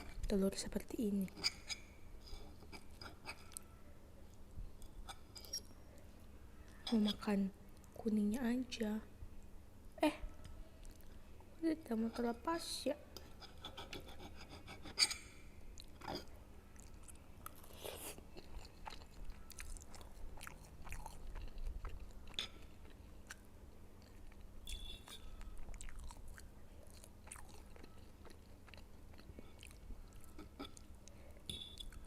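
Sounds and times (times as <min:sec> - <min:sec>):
person chewing food: 0:15.7 - 0:32.0.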